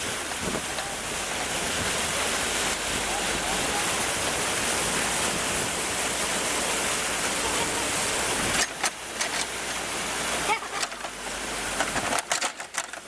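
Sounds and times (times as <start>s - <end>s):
rushing water: 0.0s - 13.0s.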